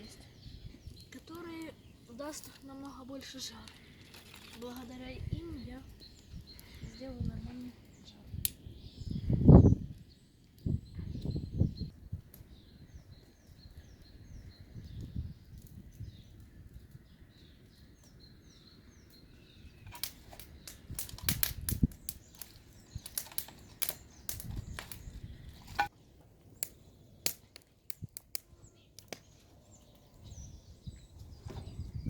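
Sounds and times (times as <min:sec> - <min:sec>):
small birds chirping: 0:00.0 - 0:32.0
wood crackling and snapping: 0:00.9 - 0:08.7, 0:14.7 - 0:30.2.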